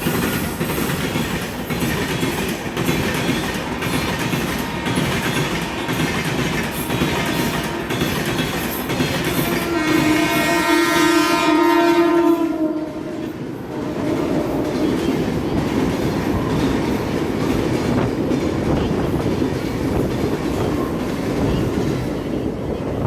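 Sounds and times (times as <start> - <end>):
train rumbling over track: 0.0 - 23.0
locomotive horn: 4.7 - 14.8.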